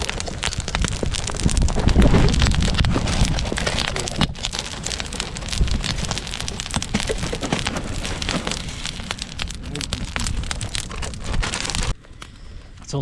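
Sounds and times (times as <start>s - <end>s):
wind rumble on microphone: 0.0s - 11.9s
campfire crackling and popping: 0.0s - 12.6s.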